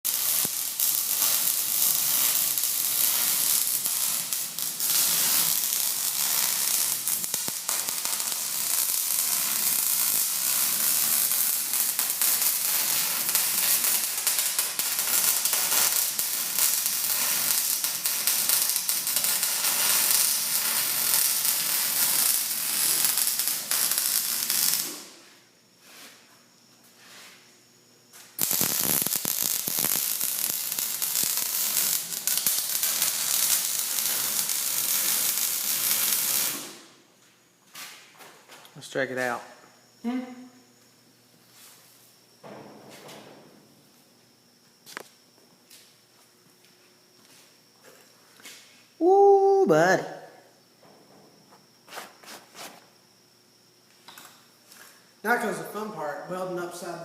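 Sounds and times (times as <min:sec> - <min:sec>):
welding arc crackling: 0:00.0 - 0:25.2, 0:28.4 - 0:36.9.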